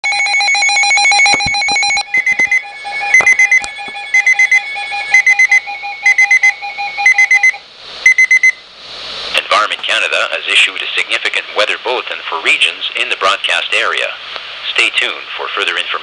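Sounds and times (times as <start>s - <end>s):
electronic alarm warble: 0.0s - 8.6s
quick high beeps: 1.1s - 8.6s.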